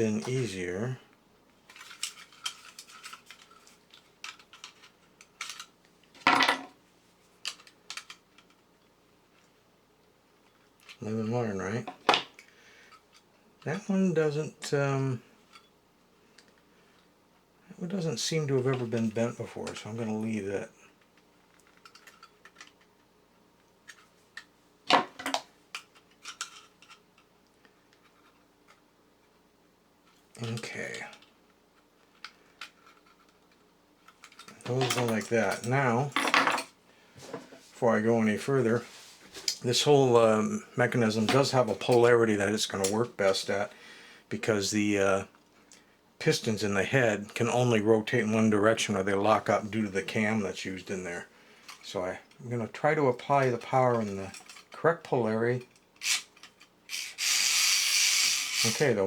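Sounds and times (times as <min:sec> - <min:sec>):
metal toy parts clicking and scraping: 0:01.7 - 0:05.7, 0:25.7 - 0:27.0, 0:54.3 - 0:54.8, 0:55.7 - 0:59.0
tin toy parts clicking: 0:56.0 - 0:58.8.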